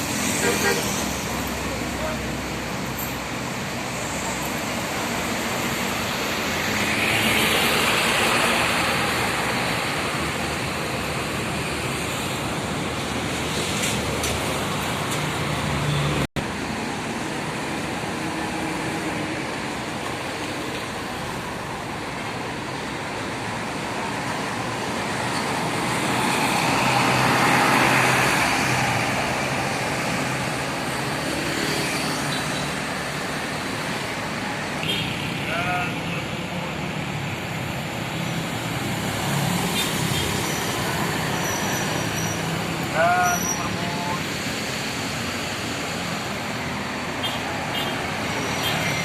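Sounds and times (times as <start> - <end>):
roadside traffic noise: 0.0 - 49.0.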